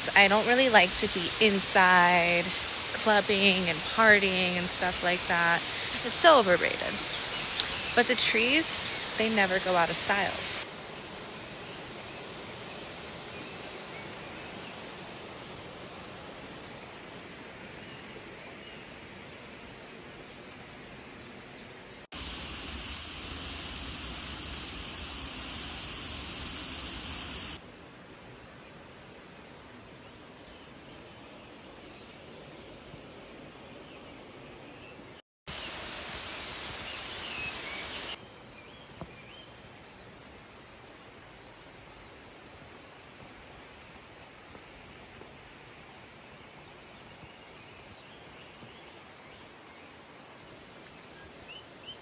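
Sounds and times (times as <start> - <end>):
waterfall rushing: 0.0 - 10.6, 22.2 - 27.6, 35.5 - 38.2
high insect drone: 0.0 - 10.7, 22.1 - 27.6, 35.5 - 38.2
steady hiss: 0.0 - 19.9, 22.1 - 29.8, 35.5 - 52.0
faint high bird chirps: 35.5 - 39.6
whistled bird calls: 36.6 - 38.2.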